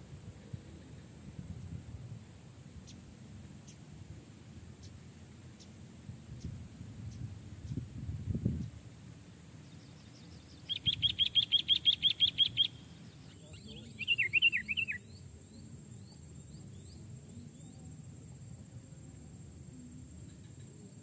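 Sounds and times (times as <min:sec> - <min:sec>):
faint bird chirps: 0:09.6 - 0:18.2, 0:20.0 - 0:21.0
bird calling sharp notes: 0:10.7 - 0:15.0
bird warbled phrase: 0:13.3 - 0:15.0.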